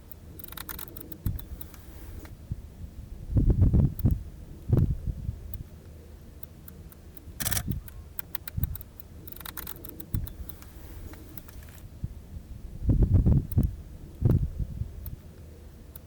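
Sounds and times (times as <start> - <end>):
camera shutter clicks: 0.4 - 2.3, 7.4 - 11.8.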